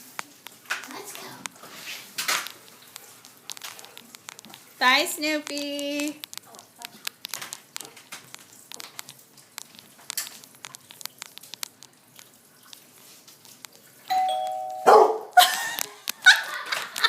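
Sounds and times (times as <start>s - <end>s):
faint clicking: 2.4s - 13.8s
two-tone doorbell chime: 14.1s - 15.2s
dog barking: 14.9s - 15.4s.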